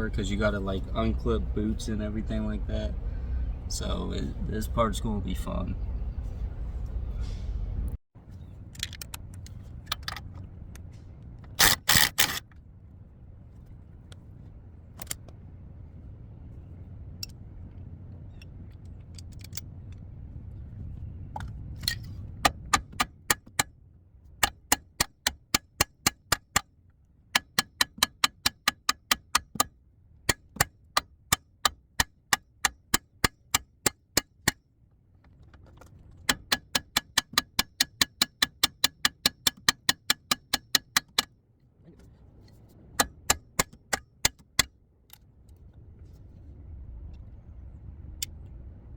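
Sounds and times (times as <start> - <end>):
low rumble: 0.0 - 11.5, 45.3 - 48.9
hand ratchet clicking: 36.3 - 41.3.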